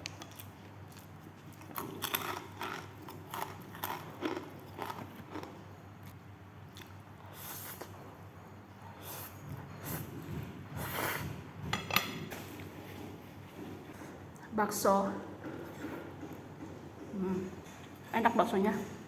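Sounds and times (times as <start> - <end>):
person chewing crunchy food: 0.0 - 7.9.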